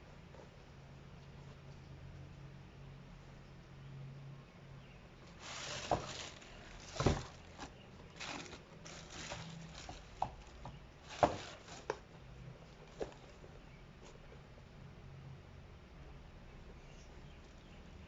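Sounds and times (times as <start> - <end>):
packaging rustling: 5.3 - 12.0.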